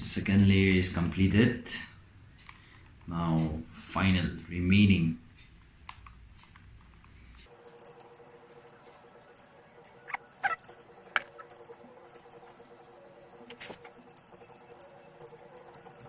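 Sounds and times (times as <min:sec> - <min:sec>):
puzzle cube clicking and rattling: 0:07.5 - 0:09.3, 0:09.9 - 0:16.0.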